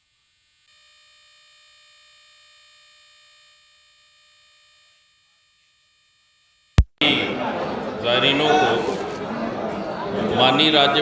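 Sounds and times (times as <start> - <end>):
high-pitched electronic buzz: 0.0 - 6.8.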